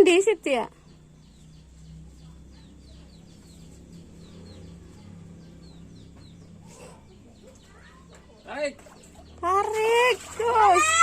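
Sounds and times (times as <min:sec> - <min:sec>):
steady low hum: 0:00.0 - 0:07.8.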